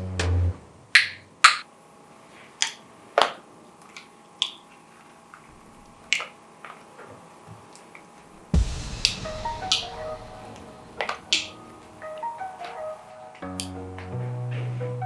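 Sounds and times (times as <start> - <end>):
music: 0.0 - 0.6, 8.6 - 15.0.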